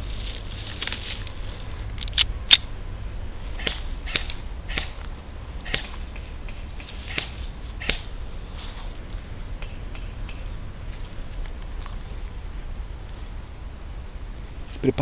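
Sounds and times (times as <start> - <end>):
low background rumble: 0.0 - 15.0
distant airsoft gunfire clicks: 3.6 - 8.2.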